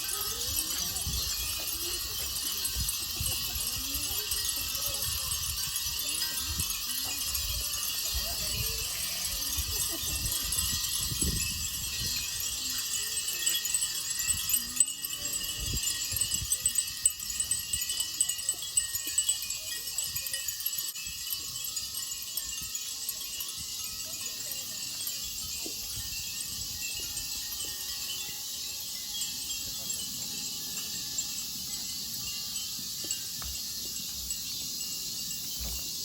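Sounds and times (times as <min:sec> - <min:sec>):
wind bells tinkling: 0:00.0 - 0:36.0
wind buffeting microphone: 0:00.2 - 0:19.3.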